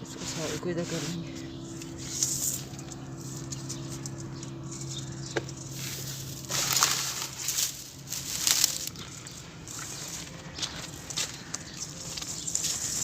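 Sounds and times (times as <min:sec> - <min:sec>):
low hum: 0:00.0 - 0:13.0
cement lumps crunching and scraping: 0:04.8 - 0:13.0.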